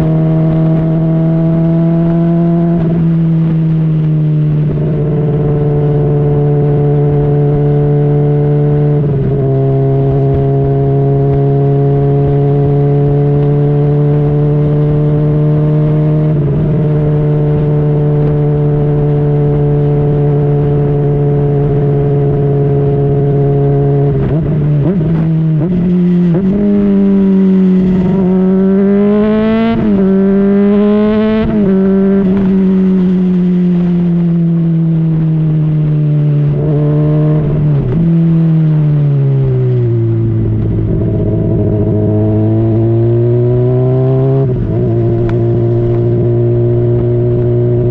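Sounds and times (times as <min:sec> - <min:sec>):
motorcycle engine revving: 0:00.0 - 0:47.9.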